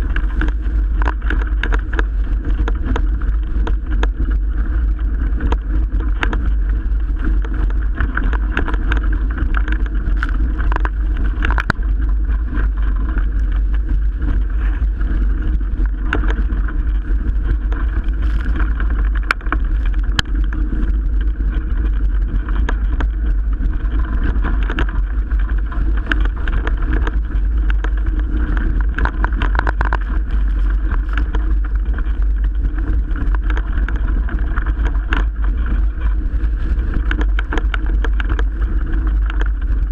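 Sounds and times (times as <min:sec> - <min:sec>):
water rushing along hull: 0:00.0 - 0:39.9
wind buffeting microphone: 0:00.0 - 0:39.9.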